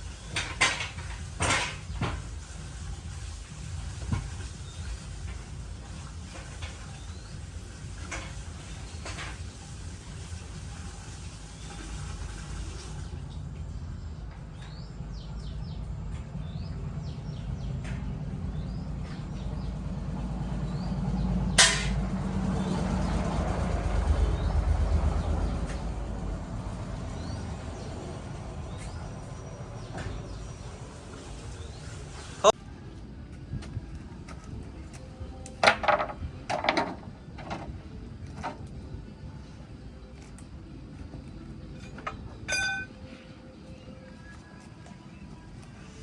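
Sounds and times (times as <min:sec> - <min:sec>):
low rumble: 0:13.2 - 0:31.1.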